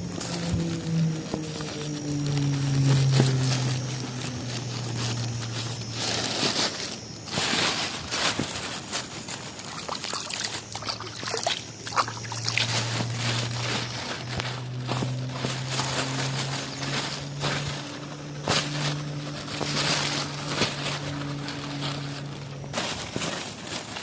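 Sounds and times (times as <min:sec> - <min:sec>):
water trickling and splashing: 0:09.4 - 0:22.5
steady low hum: 0:10.5 - 0:24.0.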